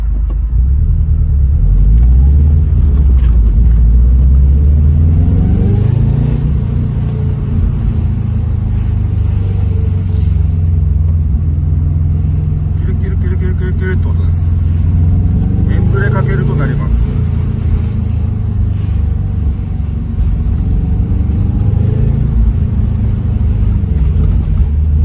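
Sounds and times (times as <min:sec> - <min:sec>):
car engine rumble: 0:00.0 - 0:25.0.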